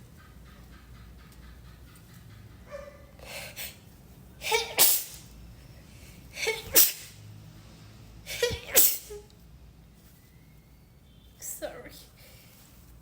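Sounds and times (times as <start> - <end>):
woman sneezing: 4.4 - 5.3, 6.4 - 7.2, 8.3 - 9.3.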